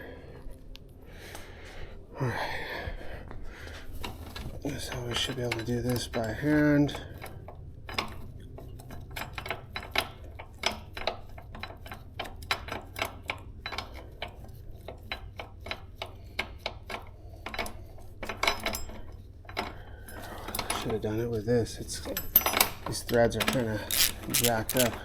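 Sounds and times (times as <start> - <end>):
metallic clicks and scrapes: 23.4 - 25.0.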